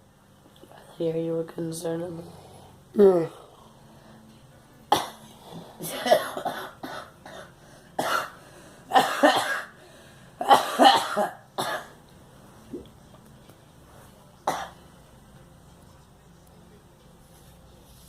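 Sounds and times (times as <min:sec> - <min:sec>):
girl coughing: 0:05.8 - 0:09.7, 0:10.4 - 0:12.0, 0:14.5 - 0:14.8.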